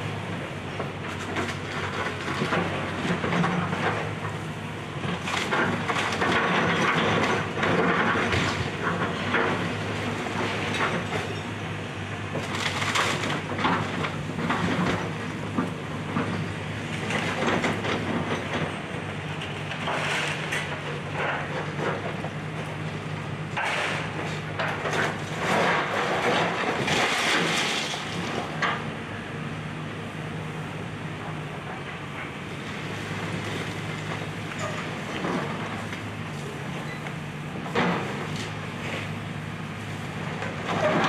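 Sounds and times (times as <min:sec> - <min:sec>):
excavator engine running: 0:00.0 - 0:41.0
structure crashing and cracking: 0:12.4 - 0:15.0, 0:23.6 - 0:28.8.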